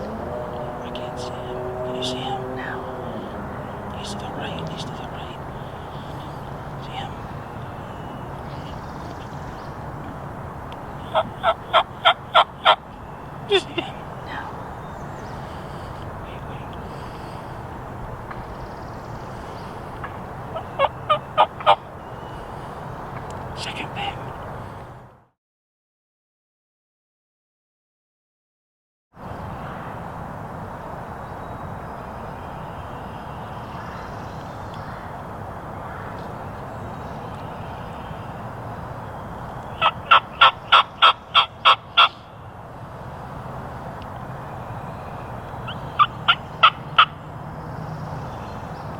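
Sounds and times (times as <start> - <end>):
steady rumbling noise: 0.0 - 25.0
wild turkey yelping: 10.9 - 12.9, 20.5 - 22.5, 39.8 - 42.2, 45.6 - 47.2.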